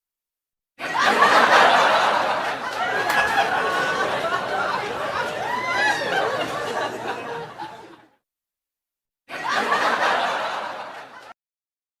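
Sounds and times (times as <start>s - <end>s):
people laughing: 0.8s - 8.2s, 9.3s - 11.4s.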